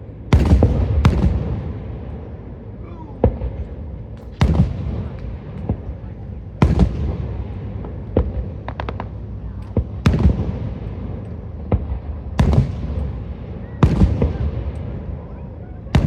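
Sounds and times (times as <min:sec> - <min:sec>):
low rumble of echo: 0:00.0 - 0:16.0
firework shells bursting: 0:03.2 - 0:15.2
small crackling pops: 0:07.5 - 0:10.0.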